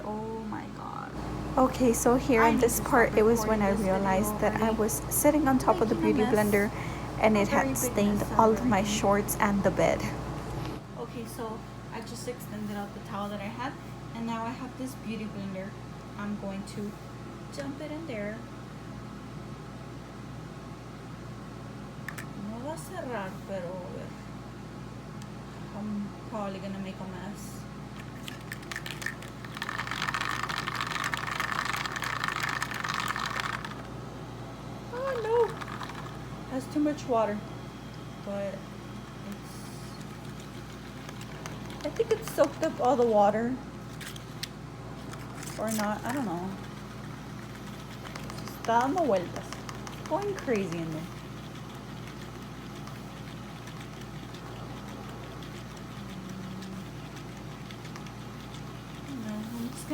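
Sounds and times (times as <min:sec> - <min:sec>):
small motor clicking and rattling: 0:28.0 - 0:34.0, 0:35.0 - 0:36.2, 0:39.3 - 0:43.2, 0:44.0 - 0:59.9.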